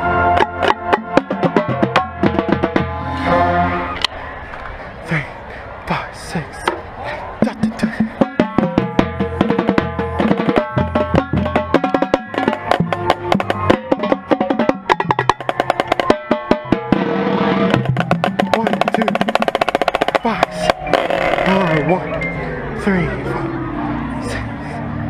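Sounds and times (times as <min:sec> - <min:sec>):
bass drum notes: 0:00.3 - 0:03.6, 0:07.4 - 0:22.8
snare drums playing rapidly: 0:00.4 - 0:03.0, 0:07.4 - 0:21.9.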